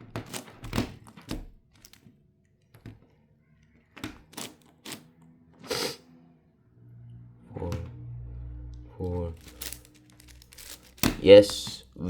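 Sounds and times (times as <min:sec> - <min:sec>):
puzzle cube clicking: 0:00.2 - 0:02.1, 0:09.4 - 0:11.8.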